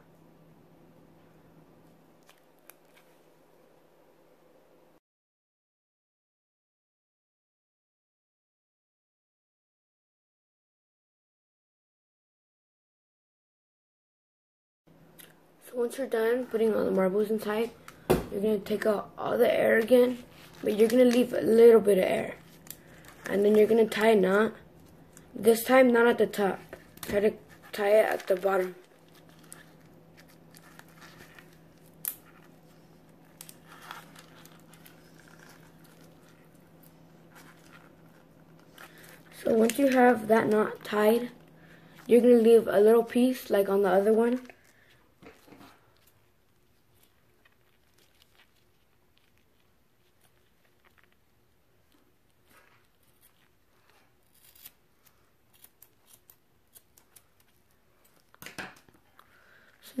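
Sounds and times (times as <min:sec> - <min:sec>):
faint steady hum: 0:00.0 - 0:05.0, 0:14.9 - 1:00.0
balloon rubbing and crinkling: 0:19.4 - 0:25.7, 0:26.3 - 0:42.0.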